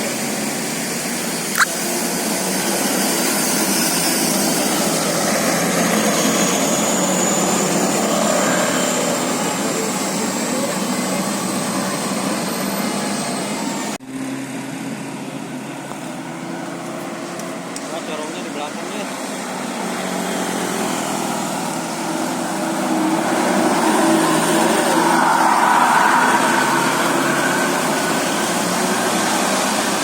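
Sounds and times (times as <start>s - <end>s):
bus engine running: 0.0s - 30.0s
sharp click: 1.5s - 1.8s.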